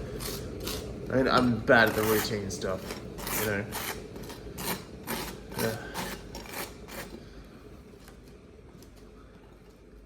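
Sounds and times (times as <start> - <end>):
knife scraping butter on toast: 0.0 - 7.2.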